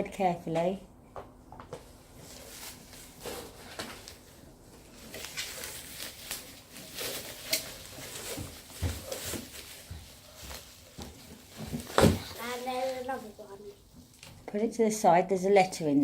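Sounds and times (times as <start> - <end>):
packaging rustling and crinkling: 2.1 - 14.4.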